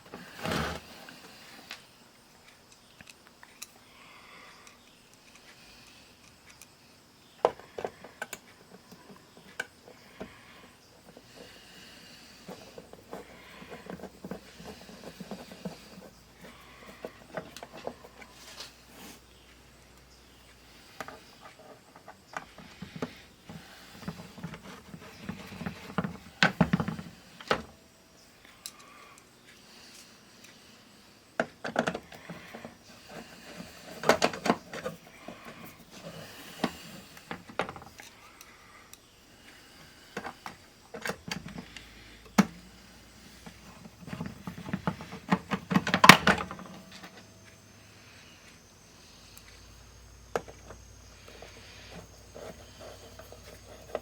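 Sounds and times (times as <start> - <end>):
handling clicks and knocks: 12.5 - 18.4, 31.4 - 38.2, 40.2 - 42.7, 43.3 - 47.3.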